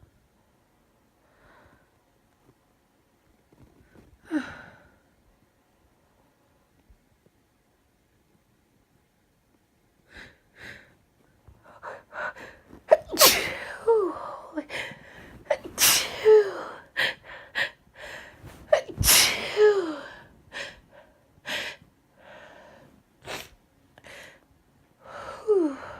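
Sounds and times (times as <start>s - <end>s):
woman sneezing: 12.9s - 13.9s, 15.5s - 16.6s, 18.7s - 20.0s.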